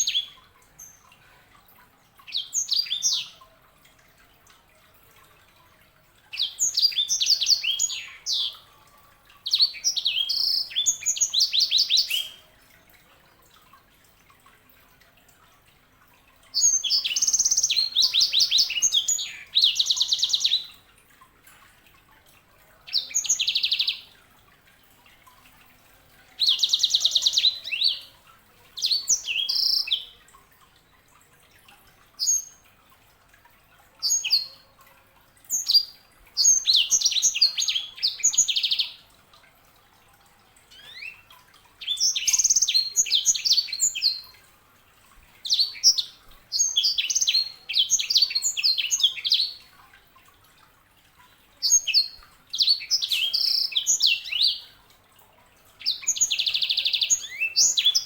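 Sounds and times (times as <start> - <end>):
canary singing trills: 0.0 - 1.0, 2.2 - 3.4, 6.3 - 8.8, 9.4 - 12.5, 16.6 - 20.8, 22.8 - 24.1, 26.2 - 30.2, 32.2 - 32.6, 34.0 - 34.8, 35.5 - 39.1, 40.7 - 44.4, 45.4 - 49.7, 51.6 - 54.8, 55.7 - 58.0.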